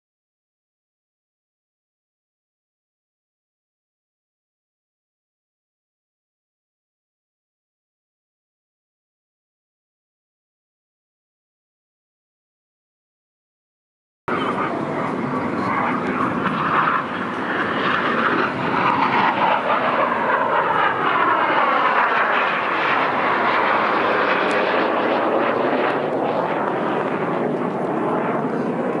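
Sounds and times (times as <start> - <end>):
jet aircraft flying past: 14.3 - 29.0.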